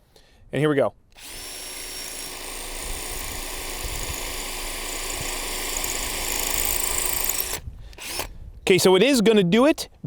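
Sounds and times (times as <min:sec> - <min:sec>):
cordless drill boring into concrete: 0:01.2 - 0:08.3.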